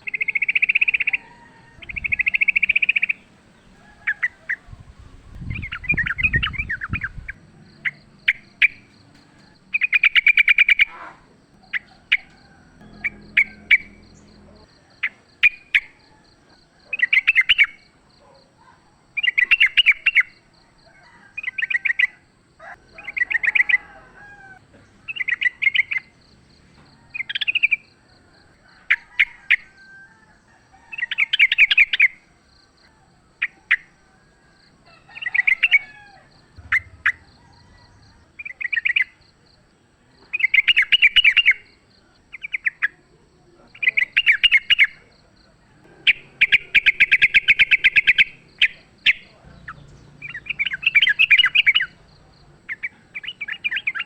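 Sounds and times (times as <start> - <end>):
bird singing bubbly phrases: 1.8 - 3.3, 4.1 - 8.9
low rumble: 11.6 - 14.8, 36.5 - 38.5.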